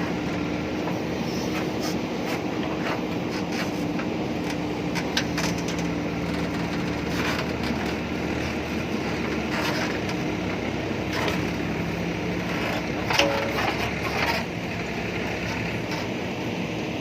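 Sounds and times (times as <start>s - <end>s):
diesel engine running under load: 0.0s - 17.0s
bucket knocking and crunching soil: 6.5s - 16.1s.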